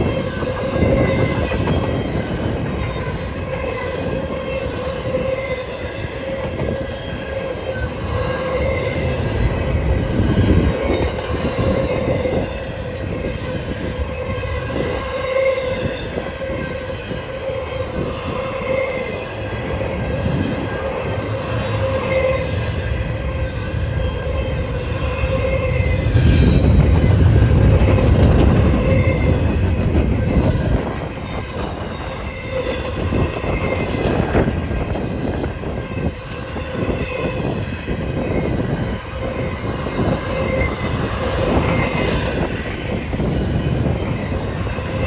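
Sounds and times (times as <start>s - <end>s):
freight train cars rumbling: 0.0s - 45.0s
wind buffeting microphone: 0.0s - 45.0s
wheel squeal: 25.4s - 30.8s.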